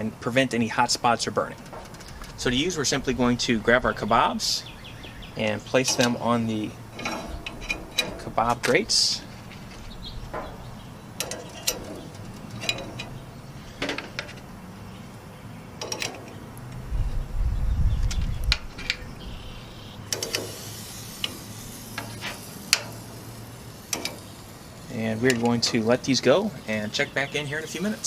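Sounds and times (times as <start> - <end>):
steady hiss: 0.0 - 28.0
metal skewers clinking on rack: 5.6 - 10.6, 11.2 - 14.5, 15.8 - 16.8, 20.1 - 24.3, 25.1 - 26.1
low rumble: 16.8 - 19.7.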